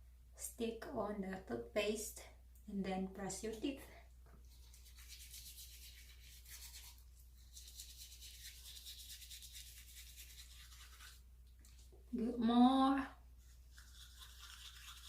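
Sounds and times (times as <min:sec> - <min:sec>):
toothbrush scrubbing teeth: 0:04.4 - 0:11.9, 0:13.4 - 0:15.0.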